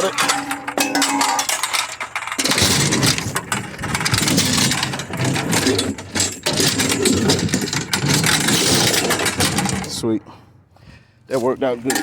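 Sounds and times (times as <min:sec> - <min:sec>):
small metal knocks: 0:00.0 - 0:10.0
scrap metal scraping and rattling: 0:00.0 - 0:10.1, 0:11.4 - 0:12.0.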